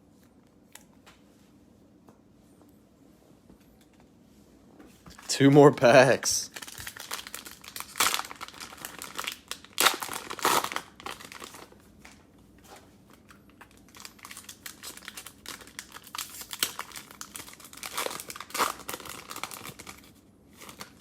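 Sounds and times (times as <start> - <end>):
cellophane crinkling and tearing: 6.5 - 12.2, 13.1 - 21.0.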